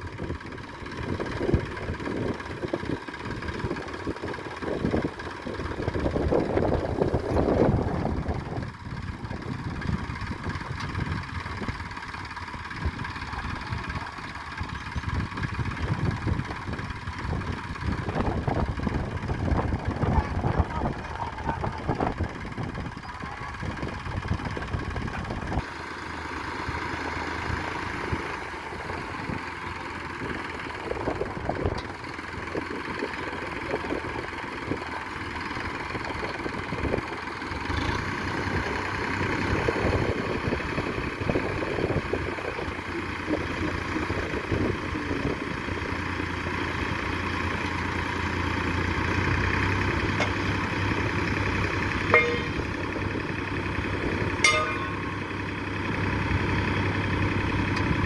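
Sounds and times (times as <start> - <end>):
diesel engine running: 0.0 - 58.0
knocks and rattles: 52.0 - 53.3.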